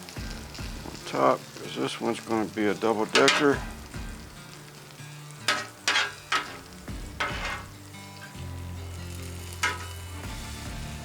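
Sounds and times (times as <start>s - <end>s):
food sizzling on a griddle: 0.0s - 11.0s
sharp metal scrapes: 5.5s - 7.8s.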